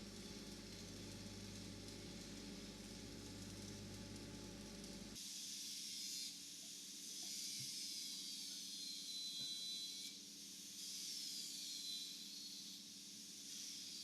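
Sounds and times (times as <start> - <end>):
welding arc hissing: 0.0 - 5.9.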